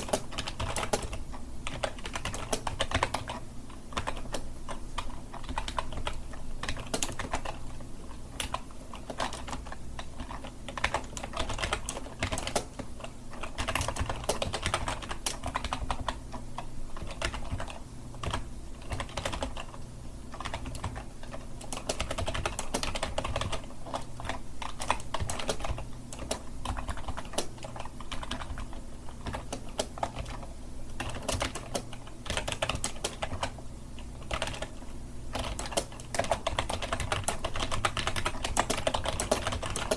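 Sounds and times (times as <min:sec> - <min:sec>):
computer keyboard typing: 0:00.0 - 0:39.9
low steady hum: 0:00.0 - 0:39.9.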